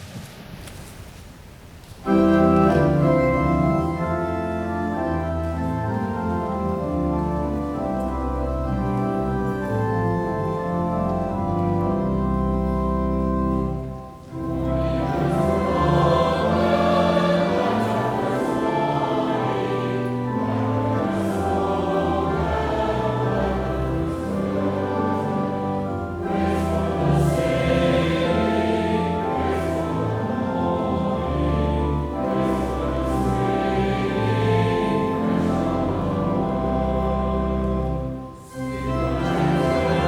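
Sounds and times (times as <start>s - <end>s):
organ chords: 2.0s - 40.0s
group singing a hymn: 14.4s - 40.0s.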